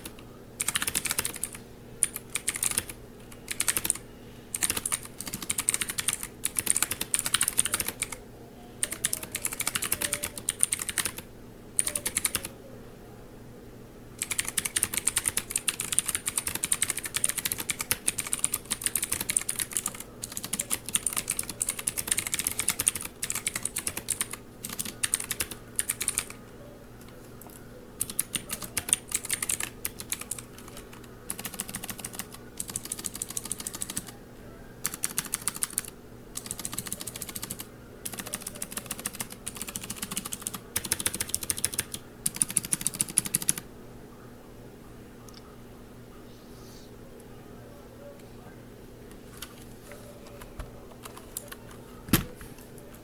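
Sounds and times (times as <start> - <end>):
mechanical keyboard typing: 0.0 - 8.2, 8.8 - 11.2, 11.8 - 12.5, 14.2 - 26.4, 27.0 - 34.2, 34.8 - 43.6, 50.2 - 52.3.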